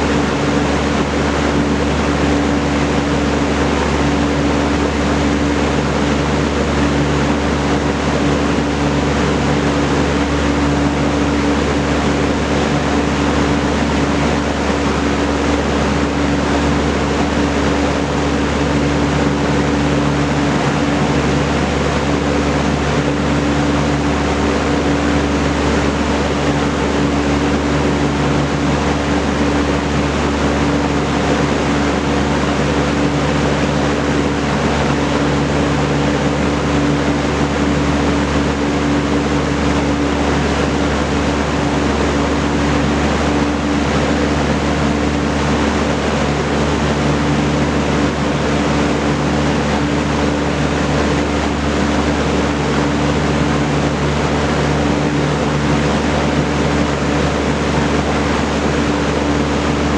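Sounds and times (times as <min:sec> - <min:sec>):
box fan air rushing: 0:00.0 - 0:59.9
fan motor hum: 0:00.0 - 0:59.9.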